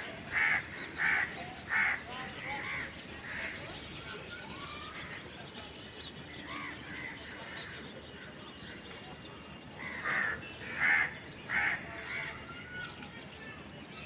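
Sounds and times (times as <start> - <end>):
loud harsh bird calls: 0.0 - 5.5, 6.3 - 8.1, 9.7 - 13.7
faint bird chirping: 0.0 - 14.0.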